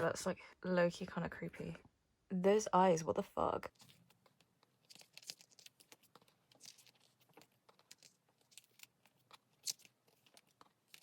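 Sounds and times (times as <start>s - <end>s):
paper rustles: 3.7s - 11.0s.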